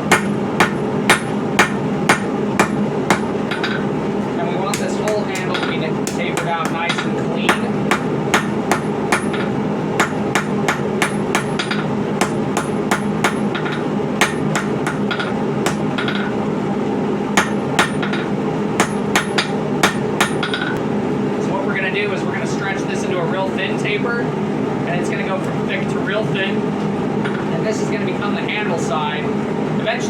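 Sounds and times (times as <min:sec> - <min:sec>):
hammer ringing on anvil: 0:00.0 - 0:03.9, 0:04.7 - 0:16.4, 0:17.4 - 0:20.8
steady hum: 0:00.0 - 0:30.0.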